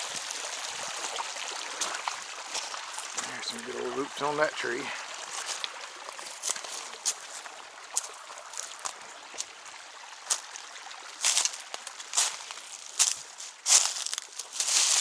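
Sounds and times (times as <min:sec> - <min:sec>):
creek trickling: 0:00.0 - 0:15.0
crunching footsteps: 0:01.8 - 0:04.4, 0:05.3 - 0:09.5, 0:11.2 - 0:15.0.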